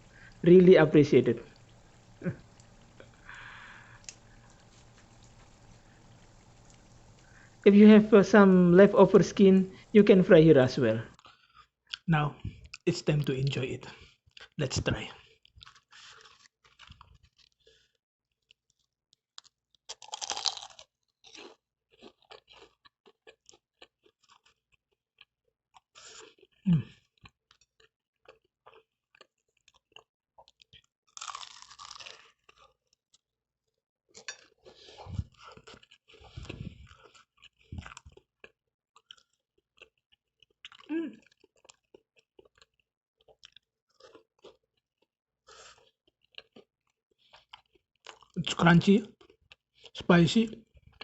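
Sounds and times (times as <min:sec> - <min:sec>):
chewing with small crackles: 0:01.3 - 0:07.6, 0:11.0 - 0:51.0
crunchy bite into pastry: 0:19.4 - 0:23.4, 0:30.4 - 0:32.8.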